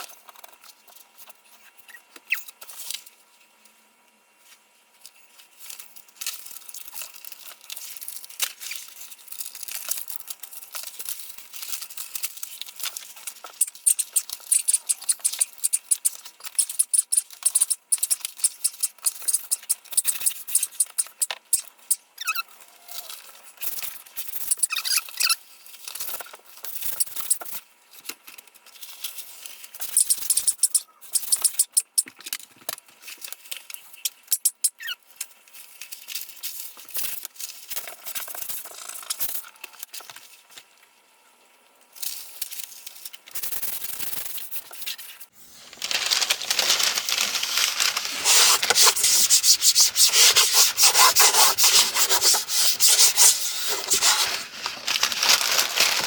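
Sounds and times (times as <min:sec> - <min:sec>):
wallpaper crinkling and peeling: 0:05.0 - 0:13.7, 0:44.8 - 0:56.0
rubbing wallpaper smooth: 0:46.4 - 0:56.0.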